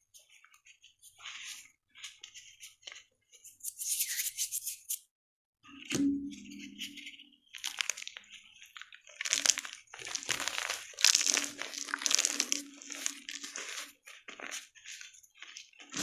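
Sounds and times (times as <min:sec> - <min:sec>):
chalk crunching: 0:03.4 - 0:05.0, 0:07.6 - 0:15.9.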